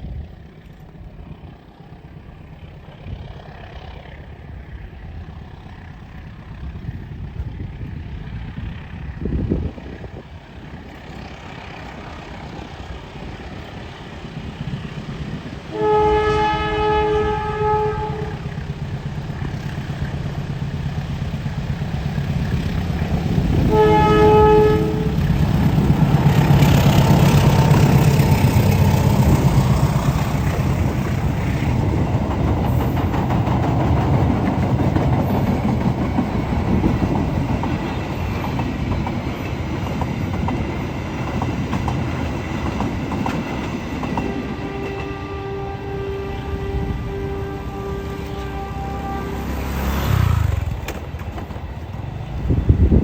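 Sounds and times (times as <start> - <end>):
train engine rumbling: 0.0 - 53.0
locomotive horn blasts: 15.7 - 18.6, 23.6 - 25.4, 44.2 - 50.6
wheels clicking over rail joints: 24.8 - 45.2, 50.5 - 53.0.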